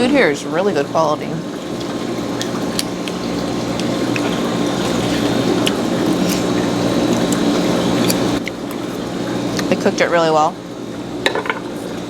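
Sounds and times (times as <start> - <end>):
wet chewing: 1.8 - 9.7.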